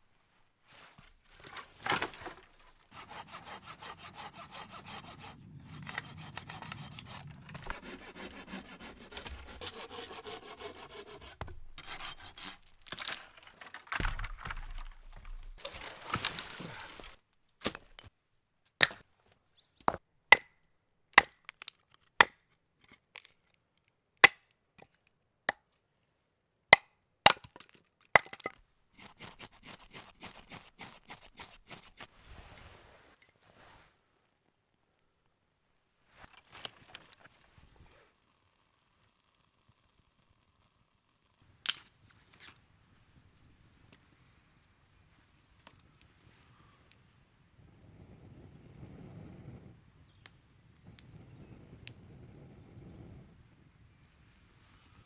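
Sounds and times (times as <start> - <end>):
sharp wooden cracks: 1.4 - 3.1, 11.4 - 18.1, 21.2 - 22.4
hand saw cutting wood: 1.5 - 13.2, 29.0 - 32.2.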